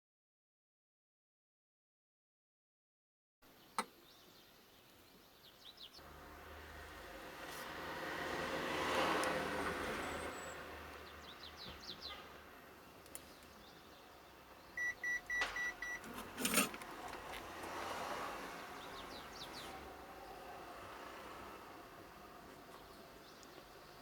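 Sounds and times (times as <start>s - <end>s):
short electronic beeps: 14.8s - 16.1s.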